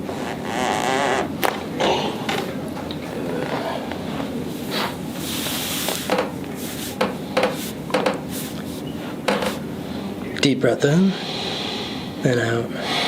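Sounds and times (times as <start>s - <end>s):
hands rubbing: 2.3s - 9.7s
soft knocks and clicks: 7.0s - 8.2s.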